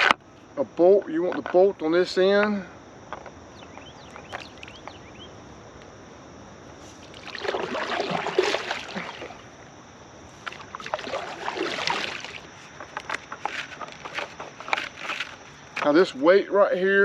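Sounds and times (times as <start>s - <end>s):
paddle swishing through water: 6.8s - 9.6s, 10.3s - 15.5s.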